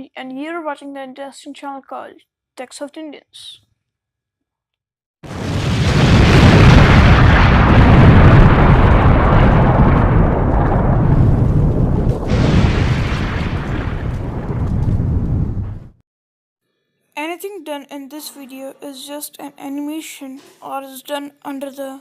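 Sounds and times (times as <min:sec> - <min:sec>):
explosion-like rumble: 0:05.2 - 0:16.0.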